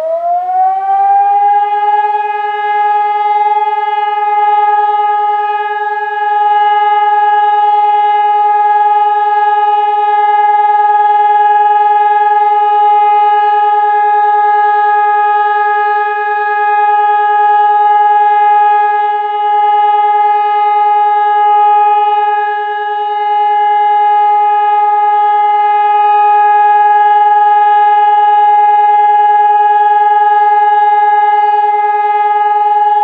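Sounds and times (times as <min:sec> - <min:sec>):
warning siren steady tone: 0:00.0 - 0:33.0.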